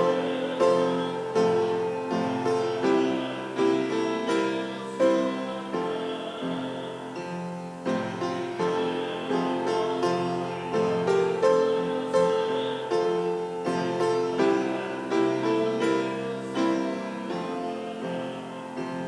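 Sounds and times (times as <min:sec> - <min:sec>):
piano playing hymn chords: 0:00.0 - 0:19.0.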